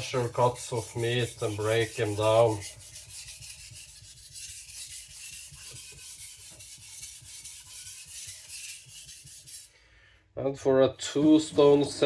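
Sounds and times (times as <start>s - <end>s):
blade scraping on a whetstone: 0.0s - 9.7s.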